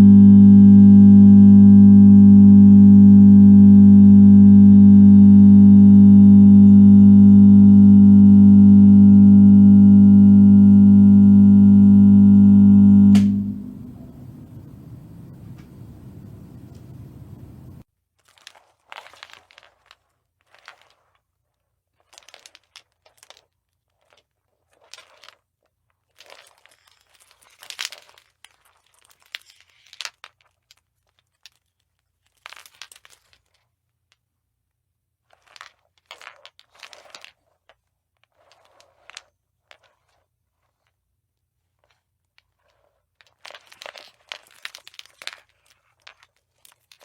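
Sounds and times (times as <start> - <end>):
glass light bulb crunching and scraping: 26.2 - 33.6, 43.3 - 47.0.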